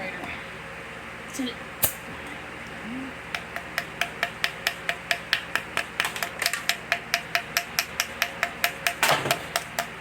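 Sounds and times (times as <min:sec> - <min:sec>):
rapid light taps on metal: 0:03.3 - 0:10.0.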